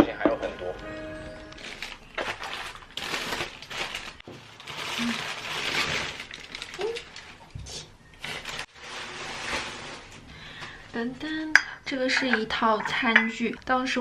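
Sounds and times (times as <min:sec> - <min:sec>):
packaging crinkling: 0:00.8 - 0:10.7.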